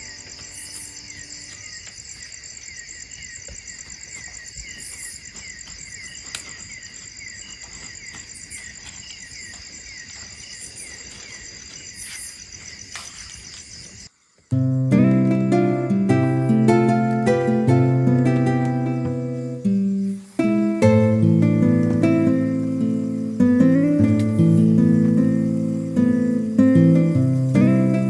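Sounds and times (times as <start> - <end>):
insects and crickets singing: 0.0 - 28.0.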